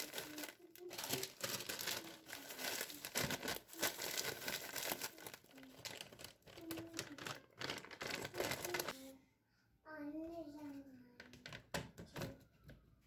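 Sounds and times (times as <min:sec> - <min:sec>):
crinkling and rustling: 0:00.0 - 0:09.1, 0:11.1 - 0:12.9.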